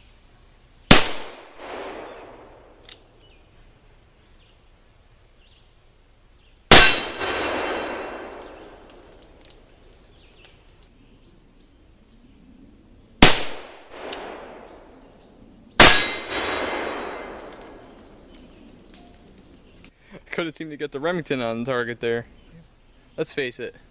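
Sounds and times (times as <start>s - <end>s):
revolver shots with long echo: 0.9s - 2.8s, 6.7s - 9.2s, 13.2s - 15.1s, 15.8s - 18.3s.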